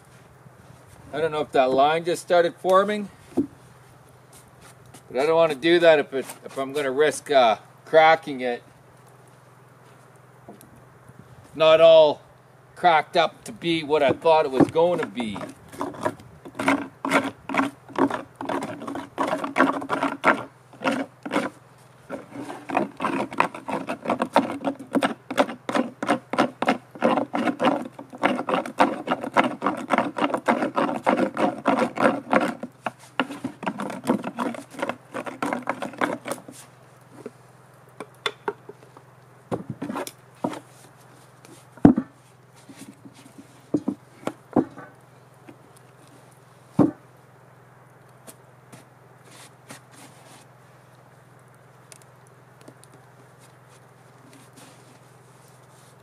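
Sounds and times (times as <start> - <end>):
hand tool rubbing on hollow wood: 13.1 - 37.4, 53.4 - 56.0.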